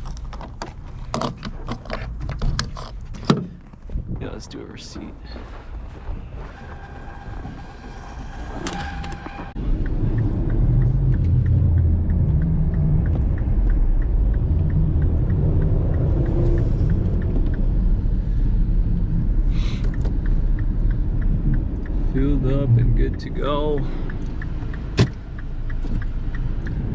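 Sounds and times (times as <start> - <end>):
idling car engine rumble: 0.0 - 26.9
turn signal clicking: 6.7 - 26.9.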